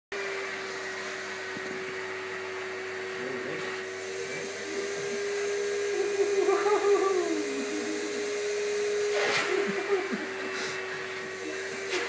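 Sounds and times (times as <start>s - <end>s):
vacuum cleaner running: 0.1s - 12.0s
wavering vocal sound: 5.8s - 8.6s.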